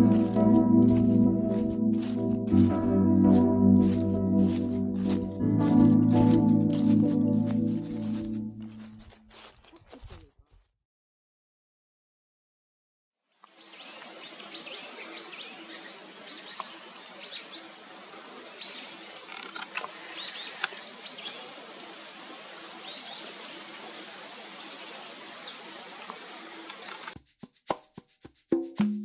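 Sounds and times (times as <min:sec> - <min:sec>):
percussive music with wood-block clicks: 0:27.2 - 0:29.0.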